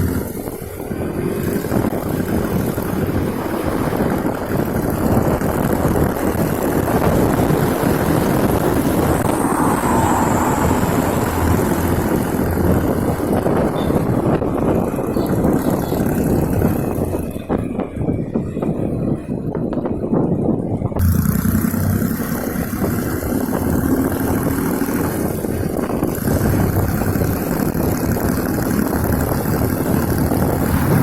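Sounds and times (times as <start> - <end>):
motorcycle engine running: 0.0 - 31.0
wind noise on microphone: 0.0 - 31.0.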